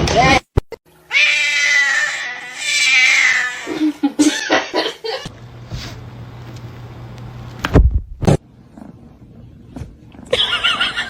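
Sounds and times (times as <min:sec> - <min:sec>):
cat meowing loudly: 0:01.1 - 0:03.7.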